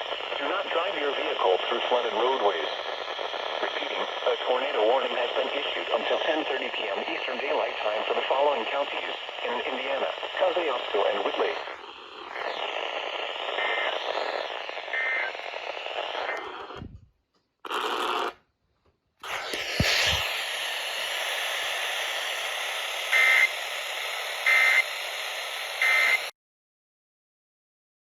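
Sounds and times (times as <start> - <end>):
radio receiver hiss: 0.0 - 17.1, 19.2 - 26.3
data burst chirps: 9.3 - 16.8, 19.3 - 26.3.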